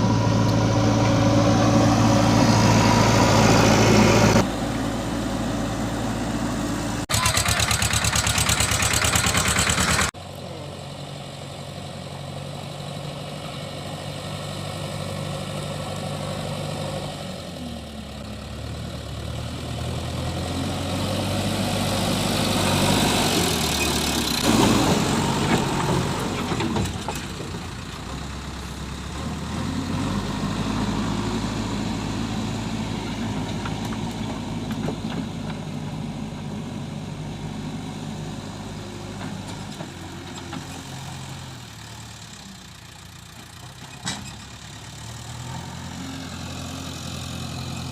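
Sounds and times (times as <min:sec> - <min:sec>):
diesel engine of backhoe loader: 0:00.0 - 0:47.9.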